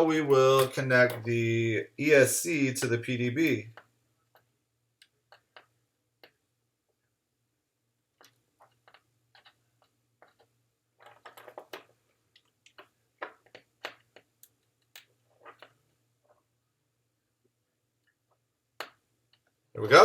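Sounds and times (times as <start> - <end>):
small clicks and taps of tools: 2.8 - 6.4, 8.2 - 16.4.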